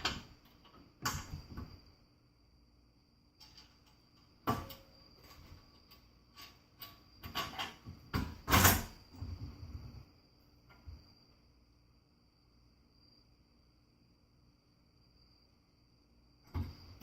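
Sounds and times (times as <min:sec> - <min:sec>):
faint high whine: 0:00.0 - 0:17.0
metallic clunks and knocks: 0:03.4 - 0:05.7.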